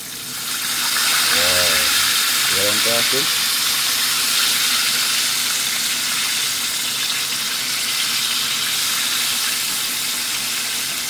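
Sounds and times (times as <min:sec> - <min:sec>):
fish sizzling in hot oil: 0:03.2 - 0:11.0.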